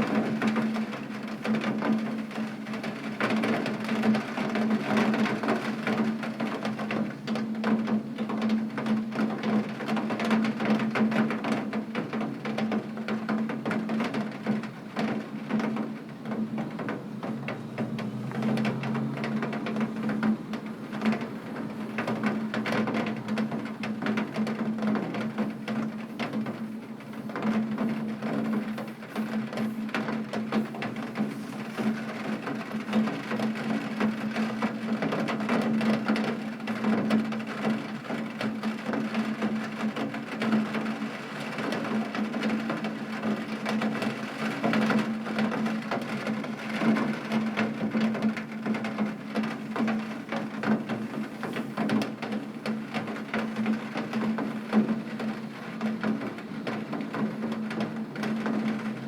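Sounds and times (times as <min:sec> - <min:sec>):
rain on a tin roof: 0:00.0 - 0:59.0.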